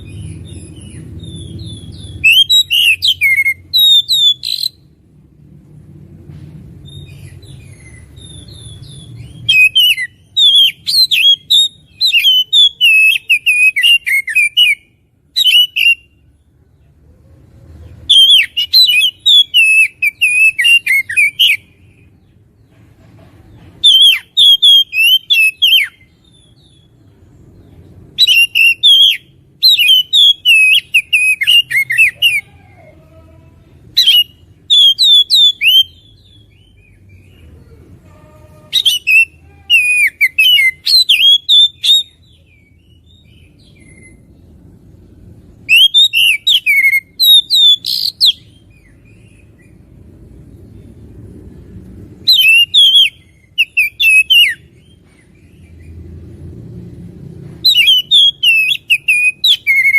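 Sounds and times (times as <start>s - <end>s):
bird singing whistled phrases: 0.6s - 4.8s, 6.9s - 16.2s, 18.1s - 21.7s, 23.8s - 26.9s, 28.2s - 32.5s, 34.0s - 37.0s, 38.7s - 44.3s, 45.7s - 49.8s, 52.3s - 54.9s, 57.6s - 59.9s.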